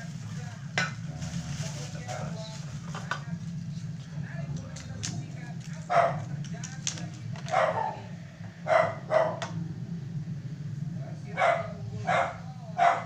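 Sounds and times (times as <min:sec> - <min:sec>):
low hum: 0:00.0 - 0:13.0
dog barking: 0:05.9 - 0:06.3, 0:07.4 - 0:09.5, 0:11.3 - 0:13.0.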